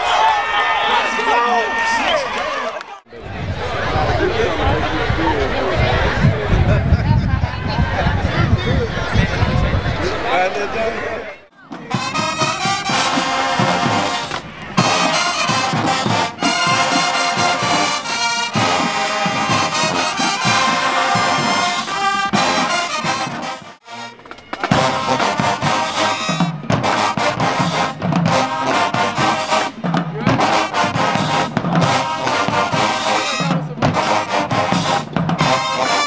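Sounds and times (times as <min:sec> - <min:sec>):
brass band playing: 0:10.1 - 0:36.0.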